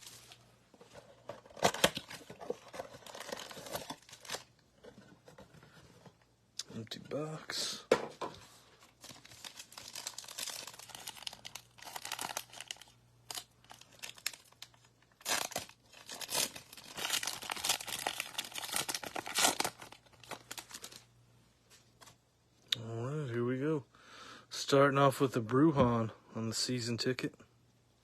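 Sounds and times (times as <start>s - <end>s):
foil wrappers tearing and crinkling: 1.4s - 4.5s, 9.0s - 21.1s.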